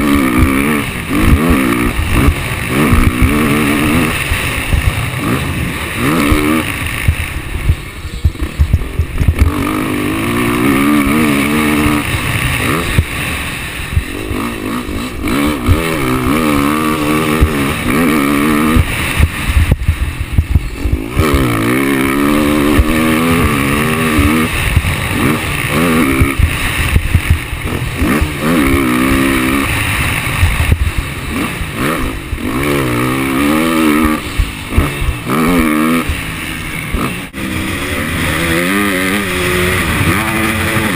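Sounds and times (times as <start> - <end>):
motocross bike engine revving: 0.0 - 40.9
wind and knocks on microphone: 19.2 - 21.3.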